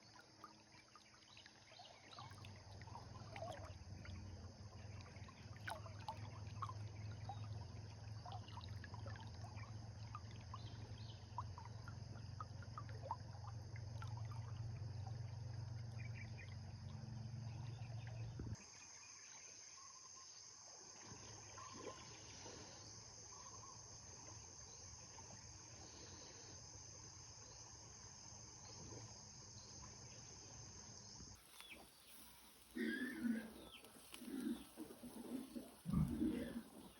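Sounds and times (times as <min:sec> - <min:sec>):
river water running: 0:25.4 - 0:36.9.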